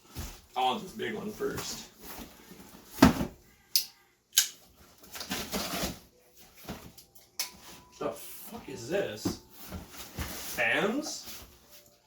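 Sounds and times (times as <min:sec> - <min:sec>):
cardboard scraping and rustling: 0:05.1 - 0:06.9, 0:09.2 - 0:11.6.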